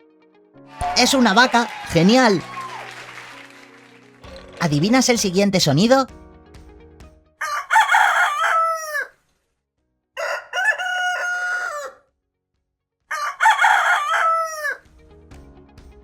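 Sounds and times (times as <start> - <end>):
rooster crowing: 7.4 - 9.2, 10.2 - 12.0, 13.1 - 14.8.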